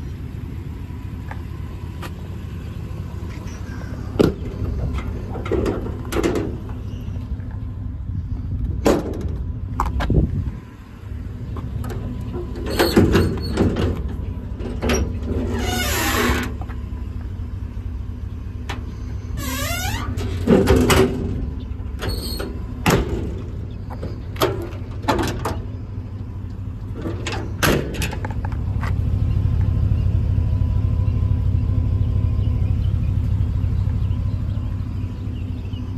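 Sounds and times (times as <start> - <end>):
low engine rumble: 0.0 - 35.9
doors clunking and latching: 3.2 - 7.6, 8.7 - 10.2, 11.5 - 16.8, 18.6 - 29.0.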